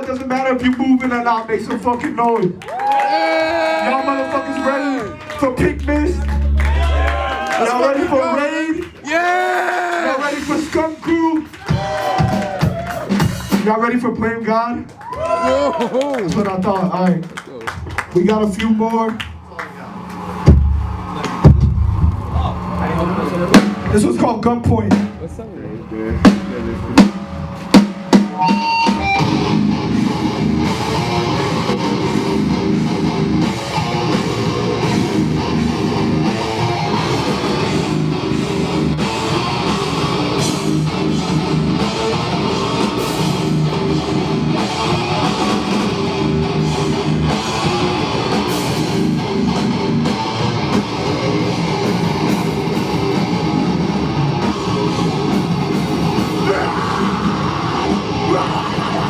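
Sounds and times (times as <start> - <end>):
heavy band playing: 3.1 - 14.6, 17.7 - 59.0
loud drum hits: 20.5 - 22.6, 23.5 - 25.4, 26.1 - 30.0.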